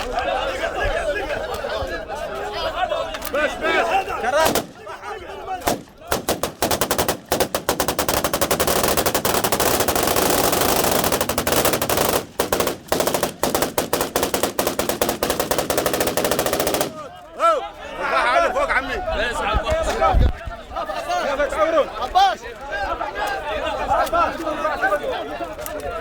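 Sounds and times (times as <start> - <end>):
automatic gunfire bursts: 4.4 - 4.8, 5.6 - 17.2.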